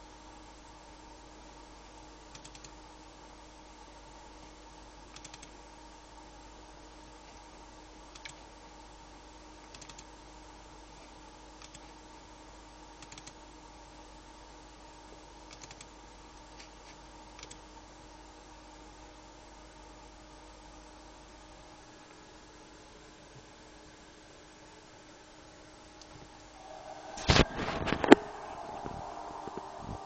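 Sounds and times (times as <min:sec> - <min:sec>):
electrical hum and hiss: 0:00.0 - 0:30.0
computer keys clicking: 0:02.3 - 0:02.8, 0:05.1 - 0:05.6, 0:08.2 - 0:08.4, 0:09.7 - 0:10.1, 0:13.0 - 0:13.4.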